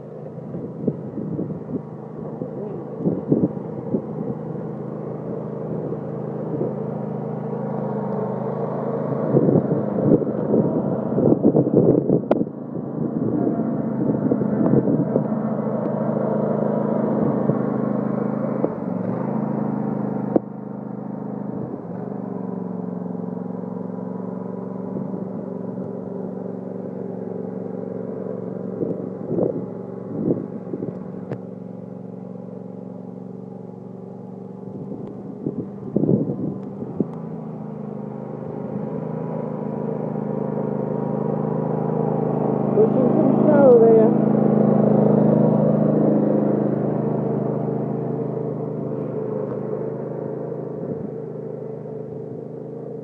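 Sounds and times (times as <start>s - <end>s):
lawn tractor engine running: 0.0s - 53.0s.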